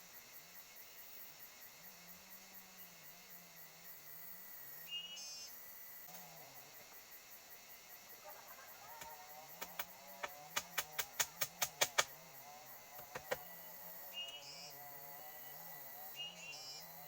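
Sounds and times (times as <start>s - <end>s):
sharp knocks: 13.0s - 13.4s.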